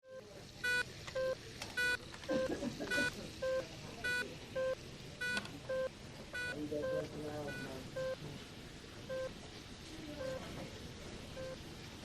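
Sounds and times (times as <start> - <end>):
electronic equipment beeping: 0.0 - 8.2, 9.1 - 9.3, 10.2 - 10.4, 11.4 - 11.6
faint murmur of voices: 0.0 - 12.0.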